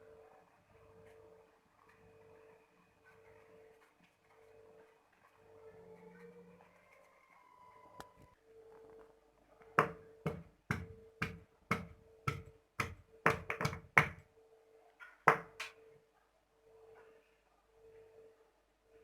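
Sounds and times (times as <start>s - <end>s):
kitchen utensil knocking: 9.8s - 14.2s, 15.3s - 15.7s.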